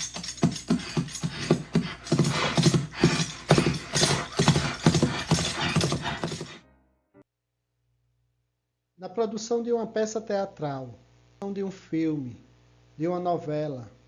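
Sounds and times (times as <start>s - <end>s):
hooves clip-clopping: 0.0s - 6.6s.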